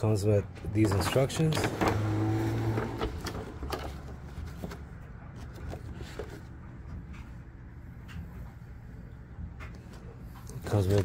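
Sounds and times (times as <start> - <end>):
paper rustling: 0.8 - 6.6, 10.6 - 11.0.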